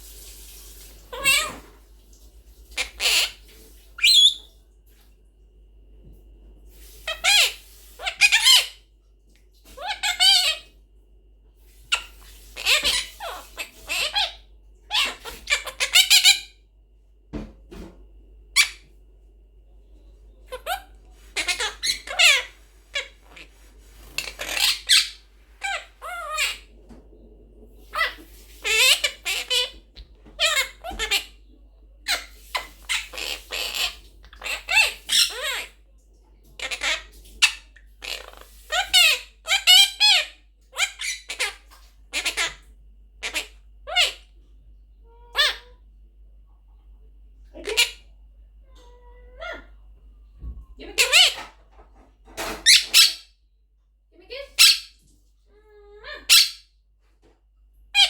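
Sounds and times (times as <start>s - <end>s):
parakeet chattering: 1.1s - 1.6s, 4.0s - 4.5s, 7.0s - 8.8s, 9.7s - 10.7s, 11.9s - 16.6s, 20.5s - 23.6s, 24.2s - 26.7s, 27.8s - 29.8s, 30.4s - 31.4s, 32.0s - 35.8s, 36.6s - 42.6s, 43.2s - 44.3s, 47.6s - 48.1s, 50.8s - 51.5s, 52.6s - 53.3s, 54.3s - 55.0s, 56.0s - 56.7s.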